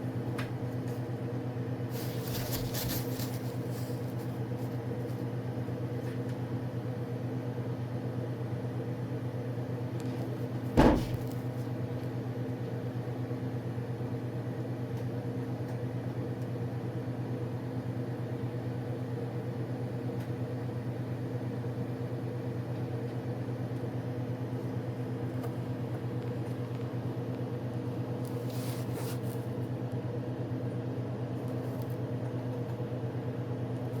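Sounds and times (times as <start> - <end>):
low mechanical hum: 0.0 - 34.0
sharp loud knock: 10.8 - 11.4.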